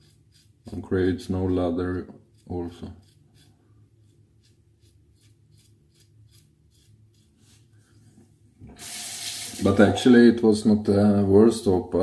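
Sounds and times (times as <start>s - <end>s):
scratchy strokes on facial skin: 0.0s - 8.1s.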